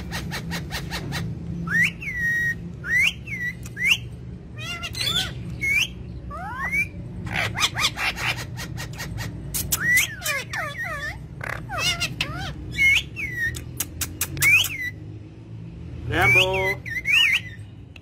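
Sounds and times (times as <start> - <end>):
parrot whistling: 0.8 - 15.0, 16.2 - 17.6.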